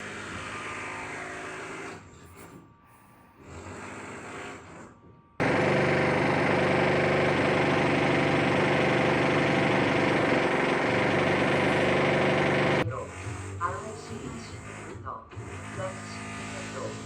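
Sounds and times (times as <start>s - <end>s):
power drill running: 5.4s - 12.8s.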